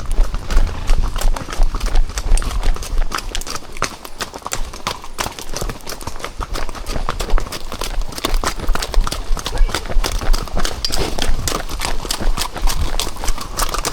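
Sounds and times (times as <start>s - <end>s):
low rumble: 0.0s - 3.6s
horse hooves clip-clopping: 0.0s - 13.9s.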